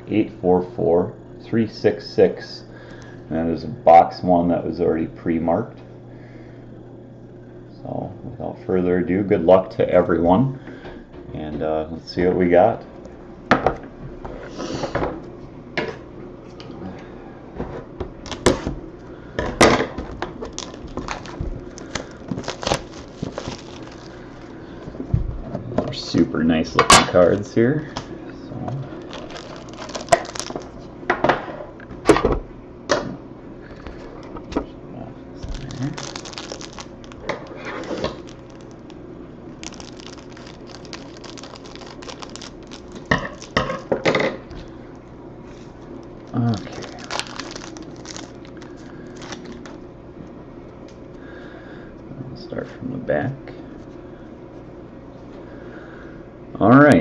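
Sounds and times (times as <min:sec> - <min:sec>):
card packaging crinkling and tearing: 0:18.2 - 0:18.7, 0:19.7 - 0:24.9, 0:28.8 - 0:30.9, 0:35.4 - 0:44.0, 0:45.5 - 0:49.8.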